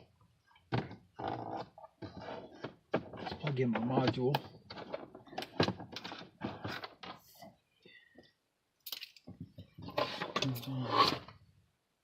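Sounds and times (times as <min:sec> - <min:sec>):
small parts clicking and clinking: 0:08.8 - 0:09.3
small parts clattering: 0:08.8 - 0:10.7.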